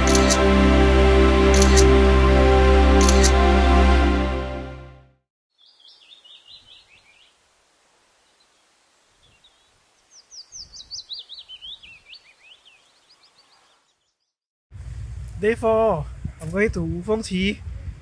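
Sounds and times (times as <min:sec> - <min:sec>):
background music: 0:00.0 - 0:05.2
bird singing: 0:05.6 - 0:07.4, 0:09.3 - 0:14.3
faint outdoor hiss: 0:05.6 - 0:14.2, 0:14.8 - 0:18.0.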